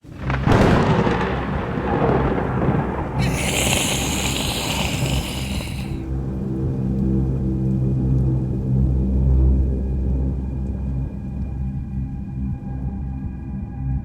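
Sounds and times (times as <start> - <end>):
thunder rumbling: 0.1 - 5.4
high hiss: 3.2 - 6.0.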